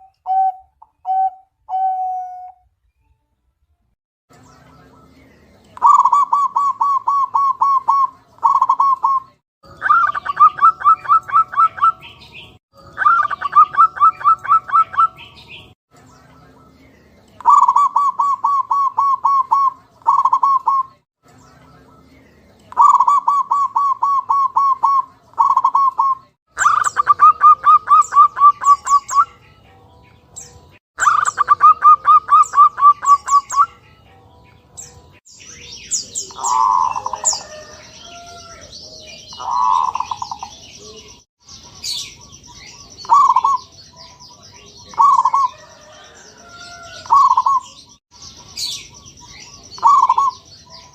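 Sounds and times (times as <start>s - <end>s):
dove cooing: 0.0s - 2.6s, 5.8s - 12.2s, 13.0s - 15.2s, 17.4s - 20.9s, 22.7s - 29.3s, 31.0s - 33.4s, 36.2s - 41.0s, 43.0s - 43.7s, 44.9s - 47.7s, 49.8s - 50.4s.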